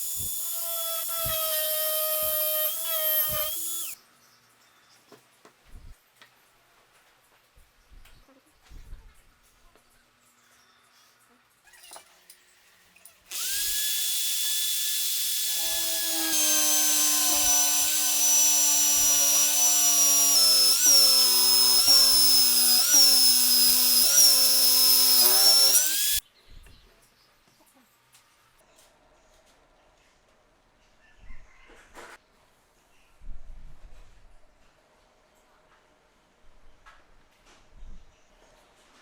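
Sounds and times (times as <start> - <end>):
electric drill motor running: 0.0 - 4.0, 13.3 - 26.2.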